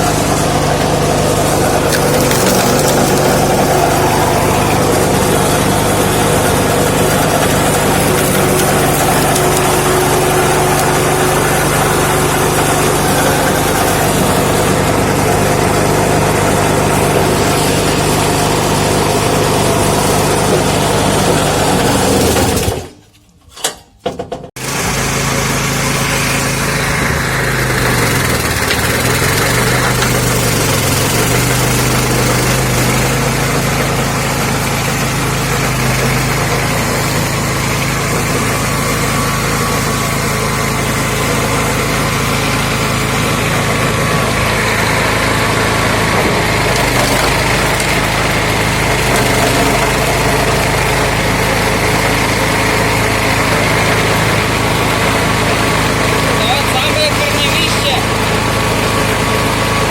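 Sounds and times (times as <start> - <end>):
petrol engine running: 0.0 - 23.8, 24.5 - 59.9.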